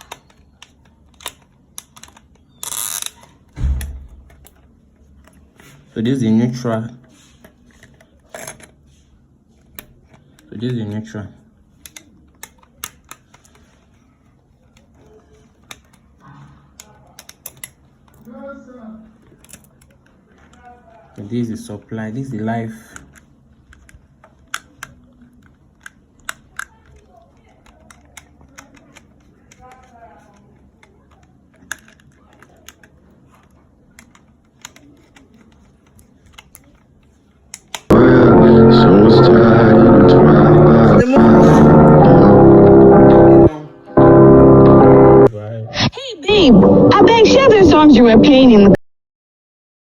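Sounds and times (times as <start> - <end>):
loud song: 37.9 - 45.3.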